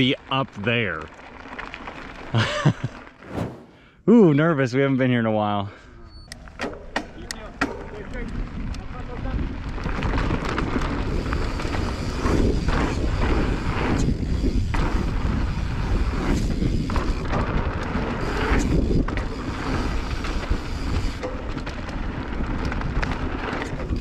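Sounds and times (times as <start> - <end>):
bike tyres rolling over dirt: 0.0 - 2.4, 7.9 - 24.0
wind rumble on microphone: 12.0 - 24.0.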